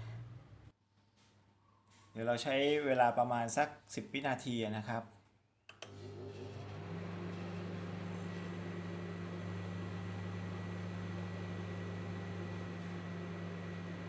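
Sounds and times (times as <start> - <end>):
microwave humming: 5.8 - 14.0.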